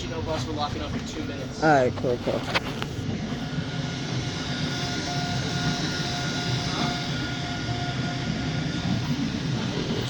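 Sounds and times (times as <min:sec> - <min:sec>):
printer mechanical hum: 0:00.0 - 0:10.0
stepper motor tone: 0:02.7 - 0:10.0.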